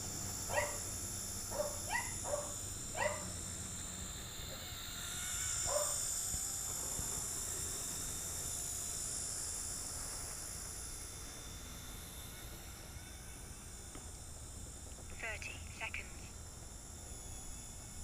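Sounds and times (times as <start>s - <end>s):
rc helicopter motors whining: 0.0s - 18.0s
dog barking: 0.5s - 0.8s, 1.5s - 3.3s, 5.7s - 6.0s.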